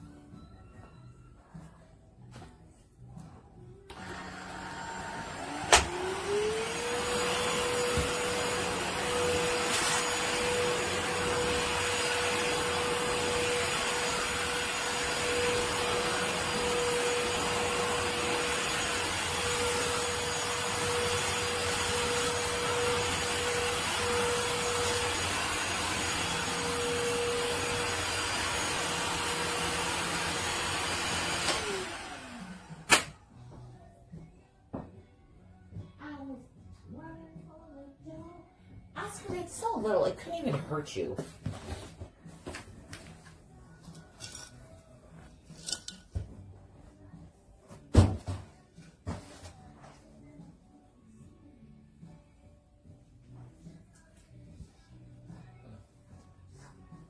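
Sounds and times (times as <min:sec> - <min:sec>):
vacuum motor whine: 0:03.9 - 0:33.1.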